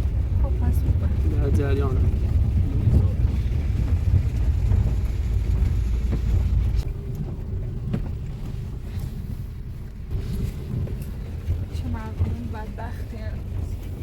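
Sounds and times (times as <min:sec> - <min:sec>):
car engine and road rumble: 0:00.0 - 0:14.0.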